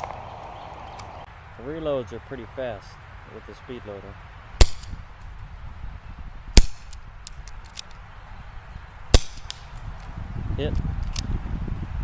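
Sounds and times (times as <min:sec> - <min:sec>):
airsoft revolver shots: 0:04.6 - 0:05.0, 0:06.6 - 0:07.0, 0:09.1 - 0:09.7.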